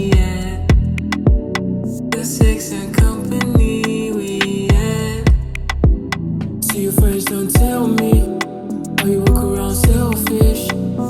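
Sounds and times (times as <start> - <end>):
deep kick drum: 0.1 - 1.5, 2.4 - 3.8, 4.7 - 6.0, 7.0 - 8.3, 9.3 - 10.6.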